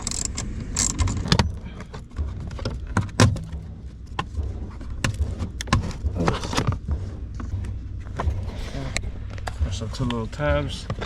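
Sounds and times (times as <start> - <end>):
low hum: 0.0 - 11.0.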